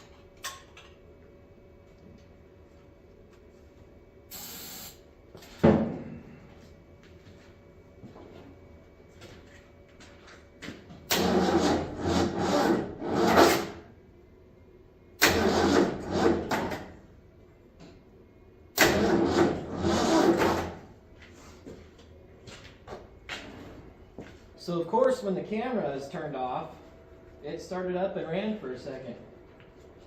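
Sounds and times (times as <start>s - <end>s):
engine cranking on starter: 11.1s - 11.9s, 15.2s - 16.5s, 18.8s - 20.6s.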